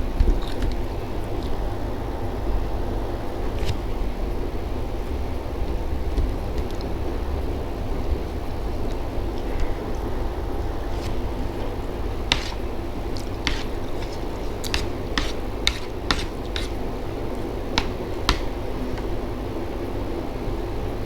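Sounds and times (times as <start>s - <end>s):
chewing crisp fried food: 10.8s - 17.6s.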